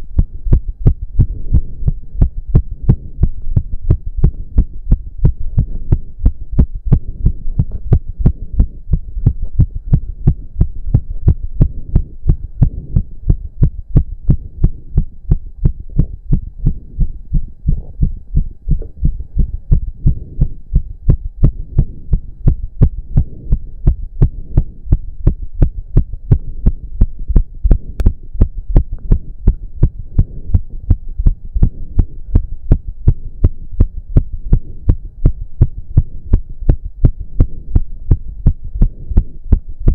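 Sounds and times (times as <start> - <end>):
heart pounding fast: 0.0 - 39.9.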